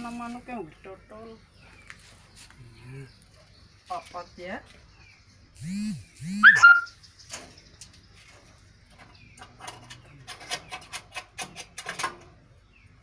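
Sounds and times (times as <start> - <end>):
lovebird chirp: 0.0 - 10.8
harsh scratchy bird chattering: 5.6 - 8.3.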